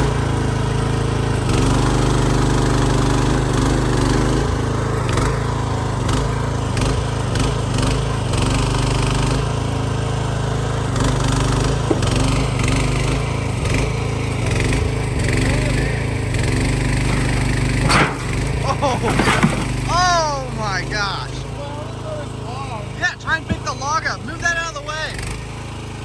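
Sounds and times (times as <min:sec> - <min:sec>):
small excavator engine running: 0:00.0 - 0:26.0
sharp knocks: 0:11.8 - 0:12.6, 0:17.0 - 0:20.0.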